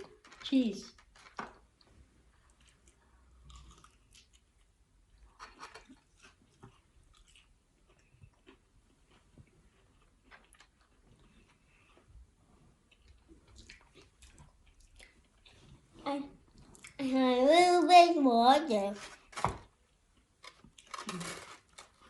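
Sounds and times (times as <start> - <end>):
chewing crunchy fried food: 2.3 - 15.8, 19.8 - 22.0.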